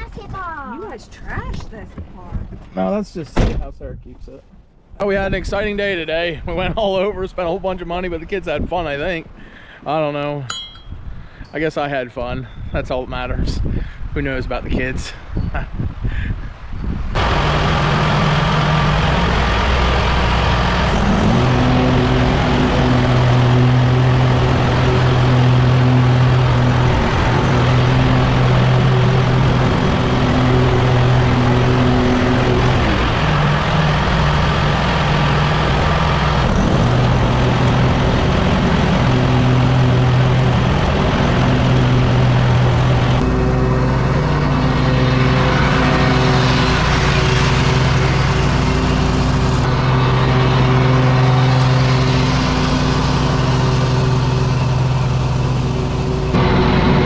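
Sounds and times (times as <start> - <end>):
lawn mower engine running: 17.2 - 57.0.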